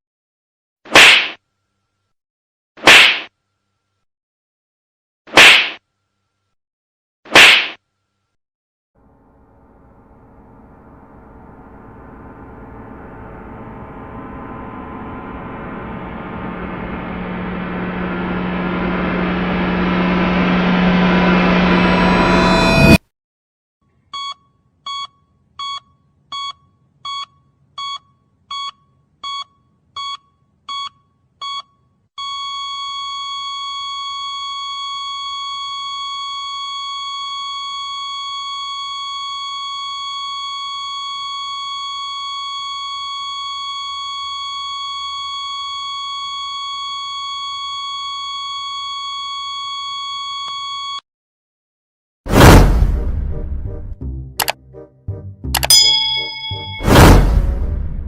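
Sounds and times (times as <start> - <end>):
flatline tone: 9.1 - 23.0, 55.4 - 57.1
heart monitor beeps: 24.2 - 32.5
loud metallic clang: 55.6 - 57.9.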